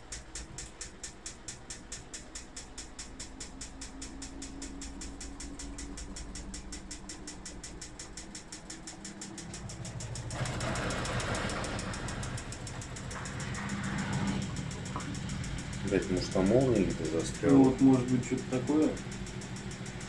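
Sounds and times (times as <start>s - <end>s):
low motor hum: 0.0s - 20.0s
washing machine drum knocking: 5.0s - 20.0s.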